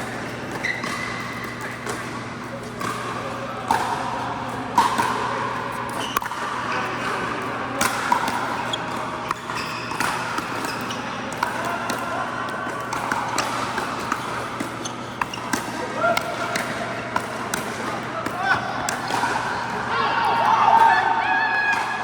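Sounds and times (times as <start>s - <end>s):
ball bouncing on court: 7.8s - 21.0s.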